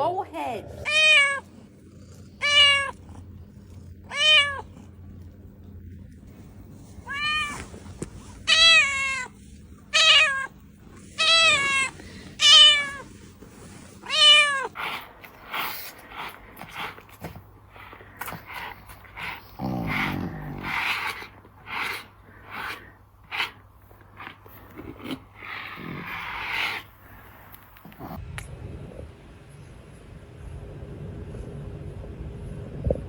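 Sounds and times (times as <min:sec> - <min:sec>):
cat meowing: 0:00.8 - 0:01.4, 0:02.4 - 0:03.0, 0:04.1 - 0:04.8, 0:07.0 - 0:07.7, 0:08.4 - 0:13.1, 0:14.0 - 0:15.0.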